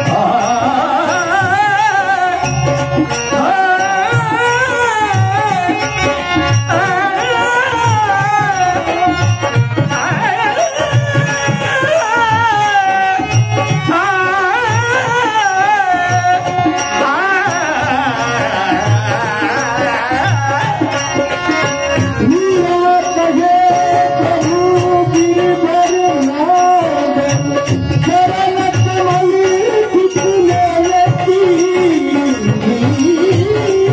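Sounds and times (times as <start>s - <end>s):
wavering devotional melody: 0.0s - 33.9s
hand drum beat: 3.4s - 33.9s.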